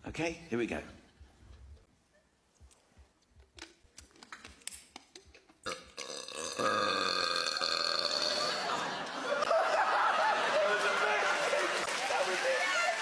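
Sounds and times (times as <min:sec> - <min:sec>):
person burping: 0:05.6 - 0:08.6.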